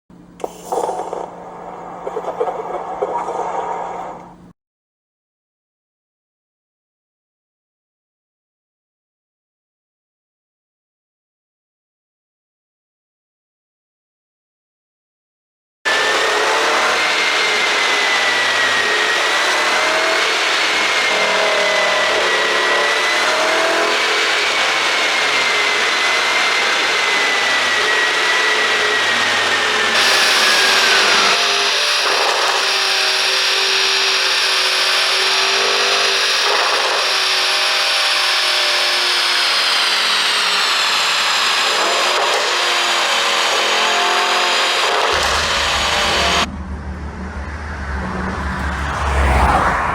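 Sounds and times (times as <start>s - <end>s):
car engine running with whine: 0.2s - 4.5s, 15.9s - 49.9s.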